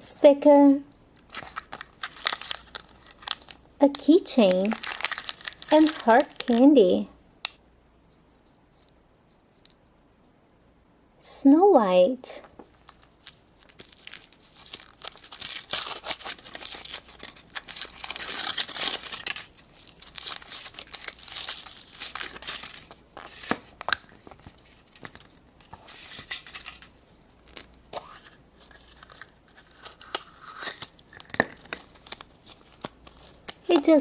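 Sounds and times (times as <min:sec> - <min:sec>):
wrapper tearing and crinkling: 0:01.2 - 0:03.6, 0:04.4 - 0:06.8, 0:12.6 - 0:34.0.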